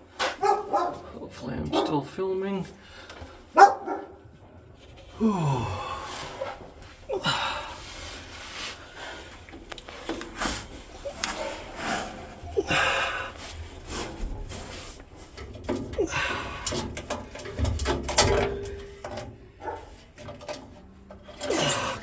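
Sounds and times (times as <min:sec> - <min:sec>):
scraping and knocking on metal: 0:13.4 - 0:22.0.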